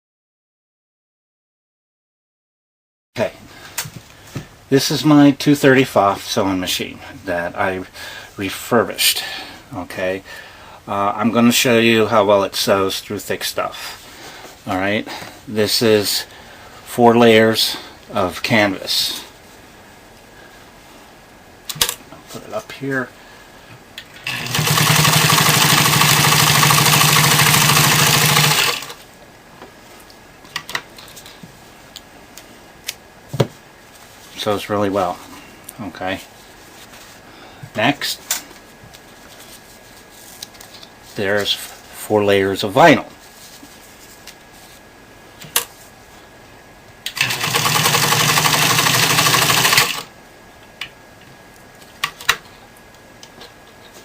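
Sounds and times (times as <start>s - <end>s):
sewing machine running fast: 24.2s - 29.0s, 47.2s - 50.1s.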